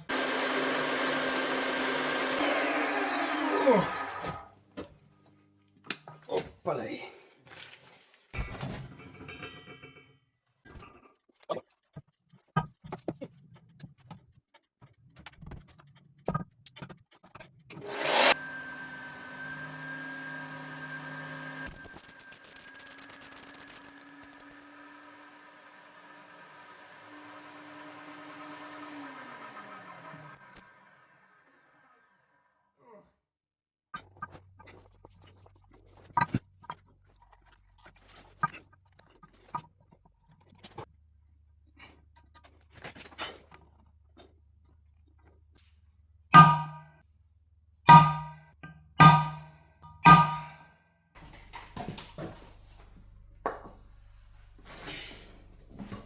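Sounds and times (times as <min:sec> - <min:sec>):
cutter whine in steel: 0:00.0 - 0:04.4, 0:17.8 - 0:32.0, 0:46.4 - 0:46.8, 0:47.9 - 0:48.4, 0:49.0 - 0:50.6
drill motor running: 0:00.0 - 0:04.4, 0:17.8 - 0:31.5.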